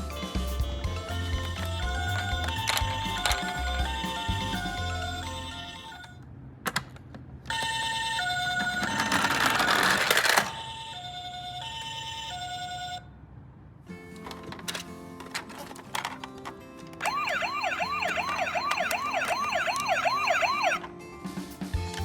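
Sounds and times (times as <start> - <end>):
toy siren two-tone: 1.2 - 6.2, 7.5 - 13.0, 17.0 - 20.9.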